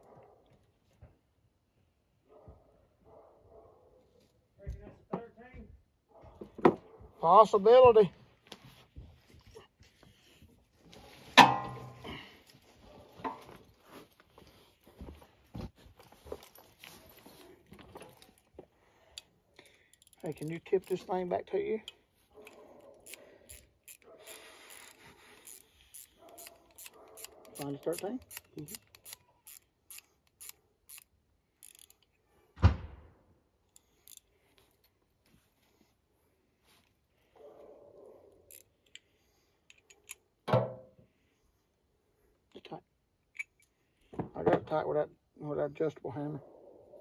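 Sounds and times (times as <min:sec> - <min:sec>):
sharp metal clank: 0:11.4 - 0:12.0
ratchet wrench clicking: 0:19.9 - 0:21.0, 0:22.4 - 0:32.1, 0:33.7 - 0:34.3, 0:38.5 - 0:39.0.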